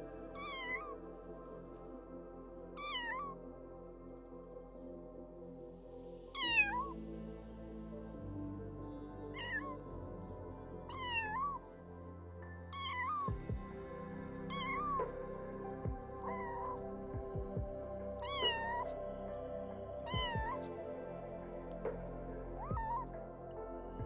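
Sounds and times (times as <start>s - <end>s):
cat meowing: 14.5s - 15.0s, 16.2s - 16.8s, 18.2s - 18.8s, 22.6s - 23.1s.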